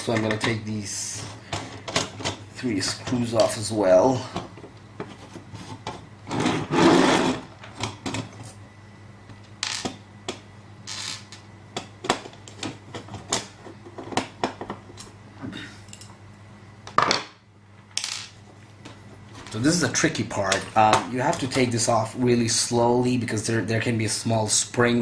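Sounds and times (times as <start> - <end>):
metal scrape: 6.3 - 7.4.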